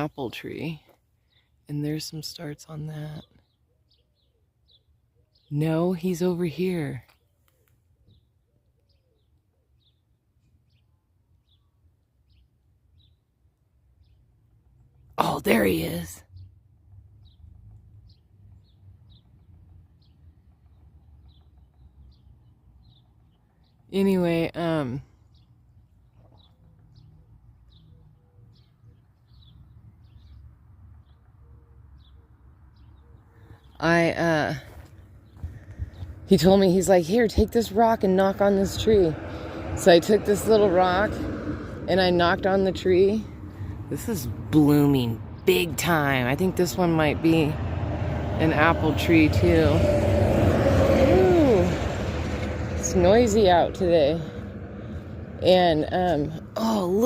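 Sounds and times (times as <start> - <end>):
bird chirping: 0.0 - 13.3, 17.2 - 39.5
low rumble of wind: 9.8 - 57.0
low background rumble: 33.9 - 57.0.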